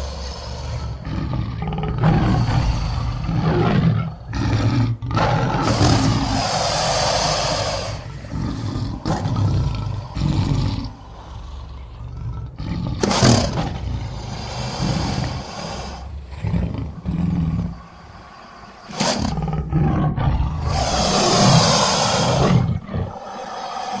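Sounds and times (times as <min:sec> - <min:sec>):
creature growls: 0:00.0 - 0:24.0
creature roars: 0:00.0 - 0:24.0.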